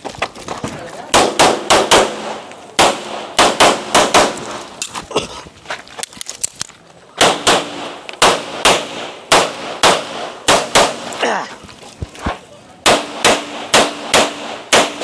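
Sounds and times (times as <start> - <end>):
rapid pistol shots: 1.1 - 4.6, 7.2 - 11.1, 12.8 - 15.0.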